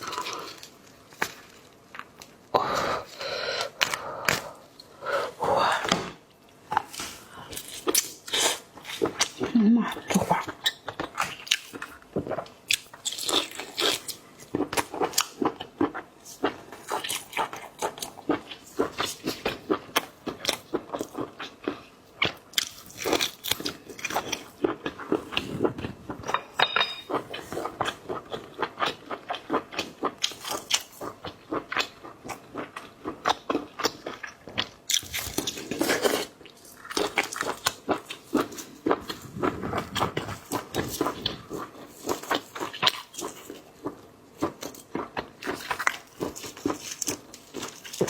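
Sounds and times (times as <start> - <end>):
chewing seafood crunches: 6.6 - 26.4, 27.1 - 48.0.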